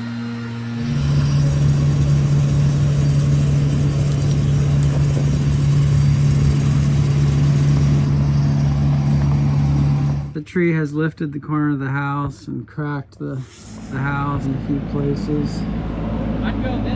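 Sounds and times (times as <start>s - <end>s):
heavy machinery engine humming: 0.8s - 10.4s.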